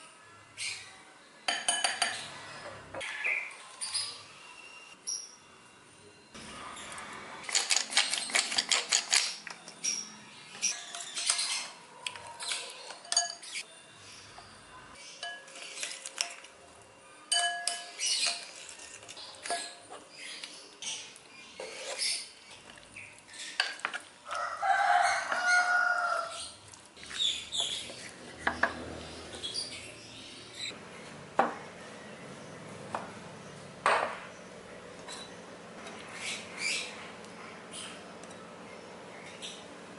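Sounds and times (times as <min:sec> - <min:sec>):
utensils clinking against cookware: 0:01.5 - 0:02.3, 0:07.4 - 0:13.7, 0:15.0 - 0:16.6, 0:17.3 - 0:21.0, 0:23.4 - 0:24.1
rooster crowing: 0:24.2 - 0:26.4.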